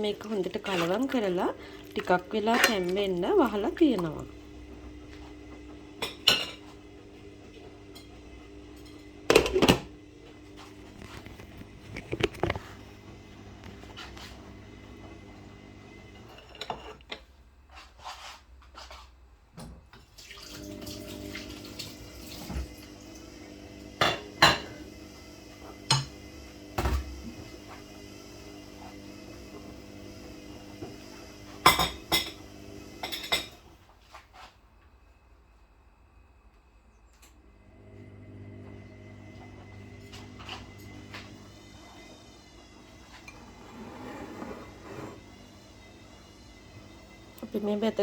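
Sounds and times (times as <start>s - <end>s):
metal pots and utensils clattering: 0.1s - 3.2s, 6.0s - 6.8s, 16.3s - 17.3s.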